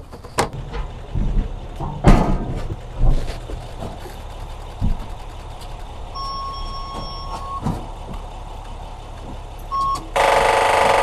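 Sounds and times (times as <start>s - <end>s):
starter clicking rapidly: 3.1s - 6.0s
dashboard warning chime beeping: 6.1s - 7.7s, 9.6s - 10.8s.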